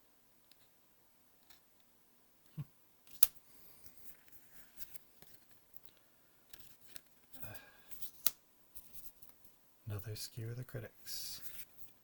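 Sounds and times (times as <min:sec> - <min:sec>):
cards sliding and rustling: 0:06.5 - 0:09.4, 0:11.2 - 0:12.0.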